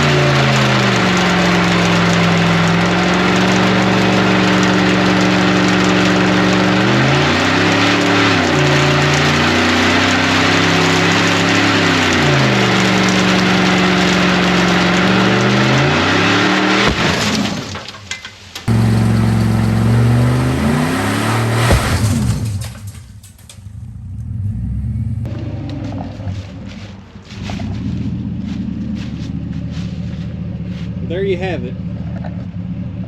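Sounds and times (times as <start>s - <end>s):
engine revving at high revs: 0.0s - 17.6s, 18.7s - 22.7s
spinning tyres hissing: 0.0s - 17.7s, 18.5s - 33.0s.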